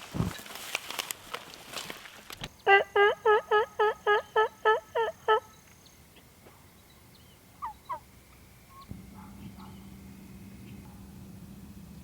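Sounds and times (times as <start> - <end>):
turkey yelps: 2.6 - 5.5, 7.6 - 8.0.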